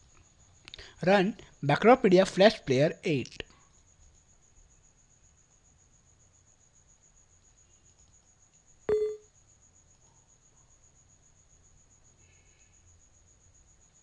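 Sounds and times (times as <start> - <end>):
low background hiss: 0.0 - 14.0
short electronic beep: 8.9 - 9.2
faint pulsing high-pitched tone: 8.9 - 9.4.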